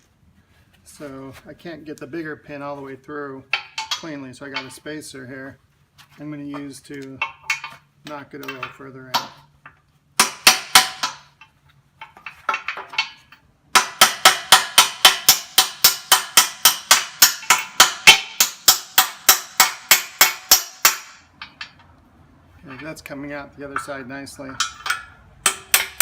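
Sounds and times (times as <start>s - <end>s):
hammer striking metal: 10.2s - 11.4s, 12.1s - 21.8s, 23.7s - 26.0s.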